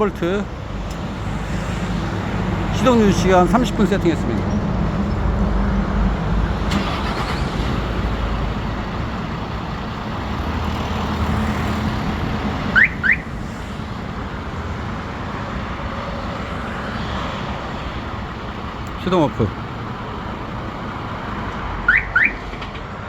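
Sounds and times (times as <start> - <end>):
diesel engine idling: 0.0 - 22.5
alarm siren chirps: 12.8 - 13.3, 21.9 - 22.4.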